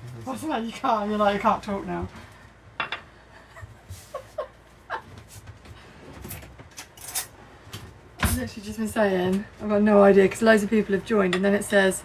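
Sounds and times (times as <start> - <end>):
soft chuckles: 3.4 - 5.2.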